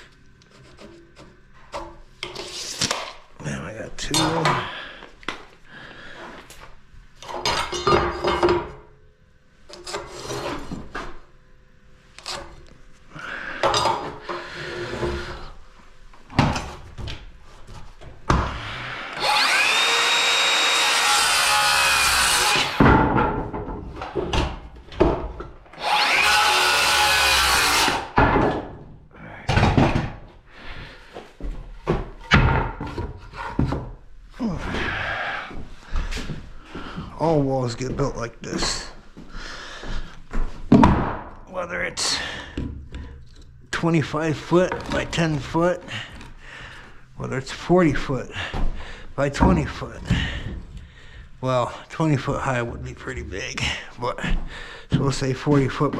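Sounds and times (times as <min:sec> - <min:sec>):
electric saw cutting wood: 0:18.6 - 0:22.9, 0:25.8 - 0:28.2.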